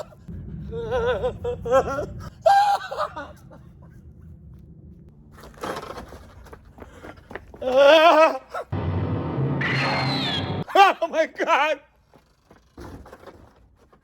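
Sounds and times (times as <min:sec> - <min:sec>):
low steady rumble: 0:03.2 - 0:05.3
short rush of noise: 0:08.8 - 0:10.6.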